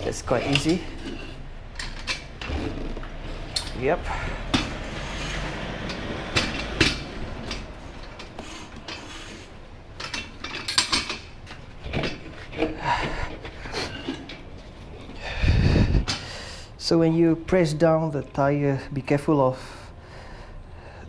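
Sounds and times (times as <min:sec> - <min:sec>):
metal clicks and knocks: 0:00.0 - 0:03.9, 0:05.8 - 0:09.1, 0:10.0 - 0:15.2.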